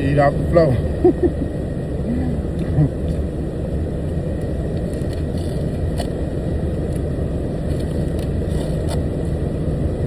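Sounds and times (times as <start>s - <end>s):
truck engine rumble: 0.0s - 10.0s.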